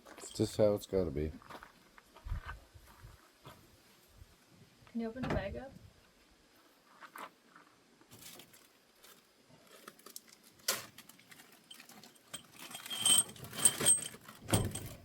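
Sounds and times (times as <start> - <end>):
metallic jingling and clinking: 0.1 - 0.6, 11.6 - 15.0.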